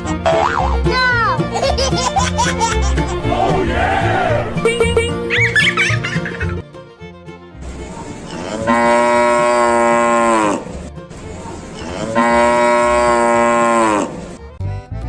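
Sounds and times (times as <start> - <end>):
cow mooing: 8.3 - 10.8, 11.8 - 14.2.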